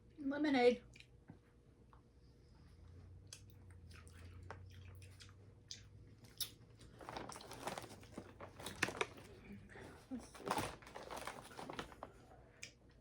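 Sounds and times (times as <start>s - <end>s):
chewing and mouth clicks: 0.9s - 1.2s, 3.2s - 7.0s
cotton candy crackling: 6.8s - 9.5s.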